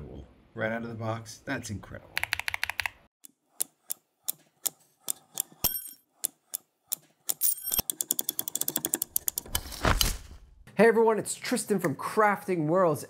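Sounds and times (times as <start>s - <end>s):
keystrokes on mechanical keypad: 2.2s - 3.0s.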